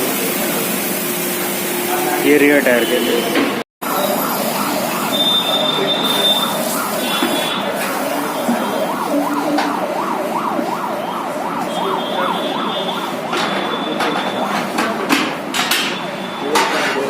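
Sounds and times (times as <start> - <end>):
siren sweeping up and down: 3.8 - 14.5.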